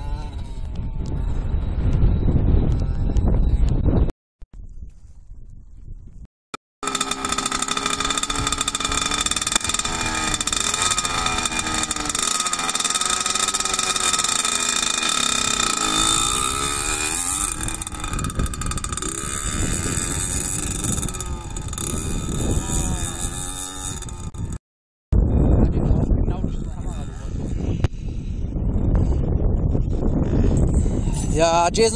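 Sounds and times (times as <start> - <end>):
motorcycle engine revving: 0.0 - 1.8, 6.8 - 24.6, 25.2 - 27.8.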